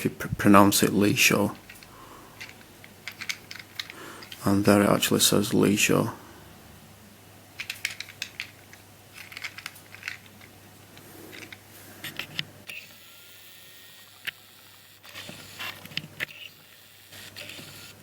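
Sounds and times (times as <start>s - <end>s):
packaging rustling: 1.5s - 4.5s, 7.6s - 12.4s
plastic puzzle clicks: 1.5s - 4.5s, 7.6s - 12.4s.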